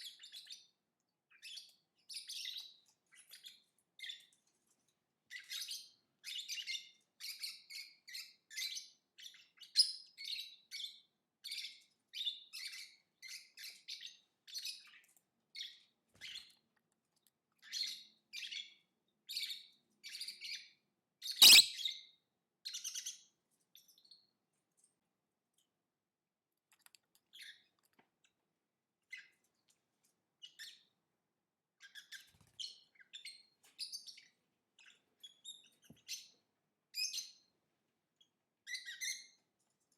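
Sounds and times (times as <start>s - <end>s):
sharp click: 21.4s - 21.7s
lovebird chirping: 21.4s - 21.9s.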